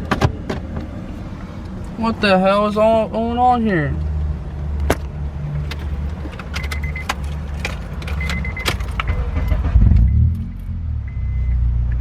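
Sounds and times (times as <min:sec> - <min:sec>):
car engine idling: 0:00.0 - 0:11.2
clicks and jingling rattles: 0:05.6 - 0:09.2.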